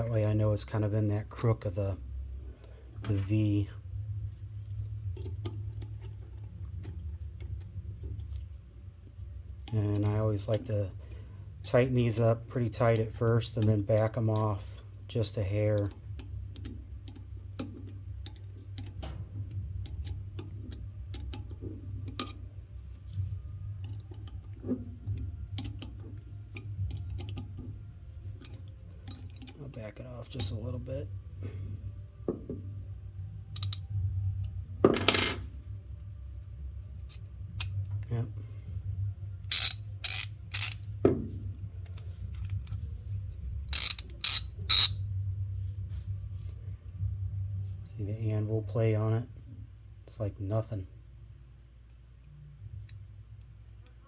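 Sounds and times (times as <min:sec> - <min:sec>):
metallic clicks of ratchet head: 0:33.6 - 0:33.8, 0:39.5 - 0:40.8, 0:43.8 - 0:45.0.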